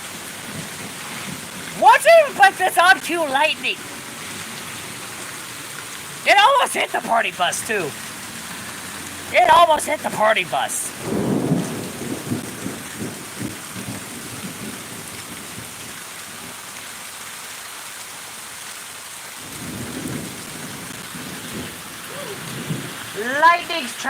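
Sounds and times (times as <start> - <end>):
heavy rain hissing: 0.0 - 24.0
thunder rumbling: 7.1 - 15.8, 19.4 - 24.0.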